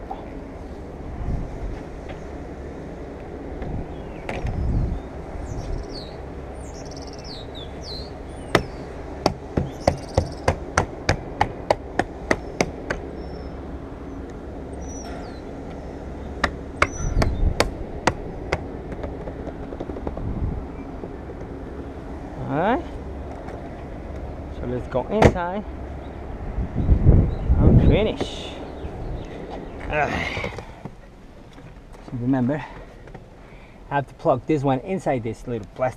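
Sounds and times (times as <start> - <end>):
birds chirping: 2.0 - 35.9.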